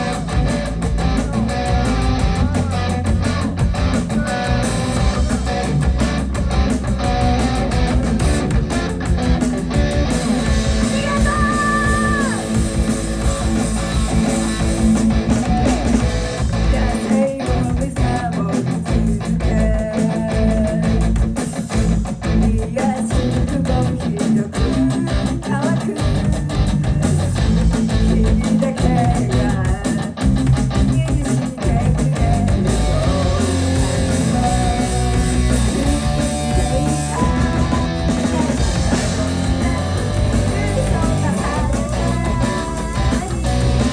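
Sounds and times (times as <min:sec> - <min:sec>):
person singing: 0:00.0 - 0:06.1, 0:10.2 - 0:21.2, 0:22.3 - 0:30.2, 0:30.8 - 0:43.9
electric guitar: 0:00.0 - 0:43.9
live rock band playing: 0:00.0 - 0:43.9.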